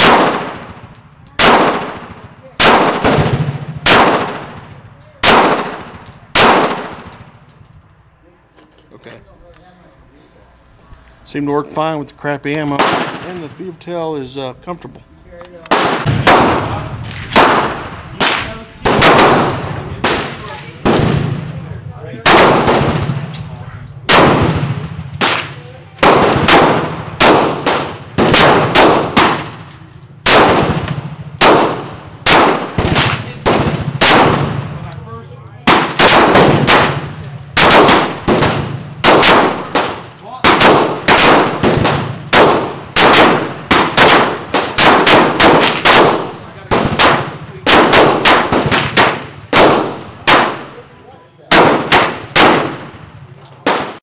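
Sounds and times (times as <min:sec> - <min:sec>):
pistol shots echoing: 0:00.0 - 0:07.4, 0:12.7 - 0:13.5, 0:15.7 - 0:21.5, 0:22.2 - 0:23.4, 0:24.0 - 0:34.9, 0:35.6 - 0:50.8, 0:51.5 - 0:54.0.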